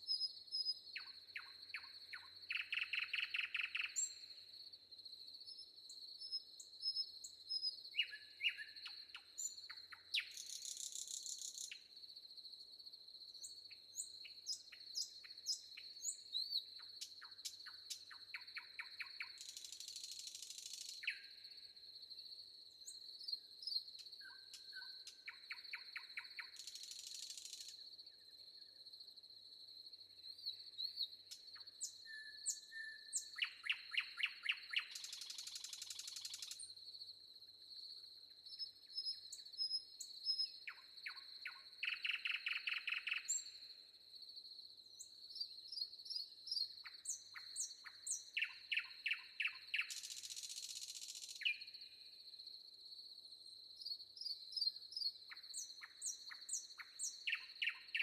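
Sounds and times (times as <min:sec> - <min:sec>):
songbirds chirping and trilling: 0:00.0 - 0:04.5, 0:13.3 - 0:21.3, 0:22.6 - 0:28.9, 0:30.2 - 0:36.8, 0:37.7 - 0:43.8, 0:44.9 - 0:51.9, 0:53.4 - 0:58.0.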